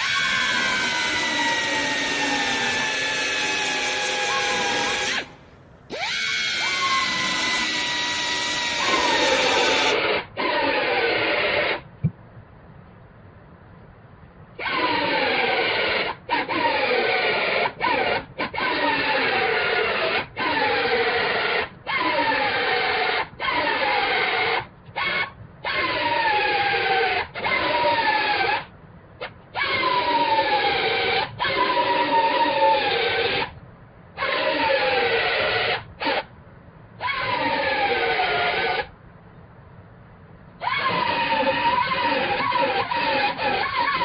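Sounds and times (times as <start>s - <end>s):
power drill drilling sheet metal: 0.0s - 10.6s, 40.7s - 44.0s.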